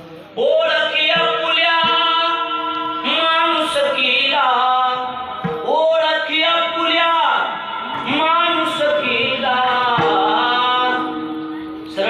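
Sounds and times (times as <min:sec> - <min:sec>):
man singing long held notes: 0:00.4 - 0:12.0.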